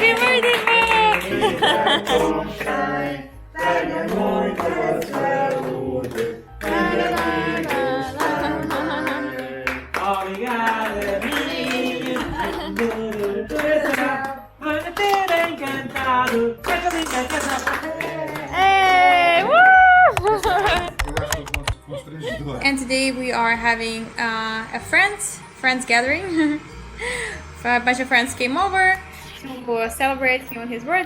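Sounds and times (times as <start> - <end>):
song with sung vocal: 0.0 - 19.6.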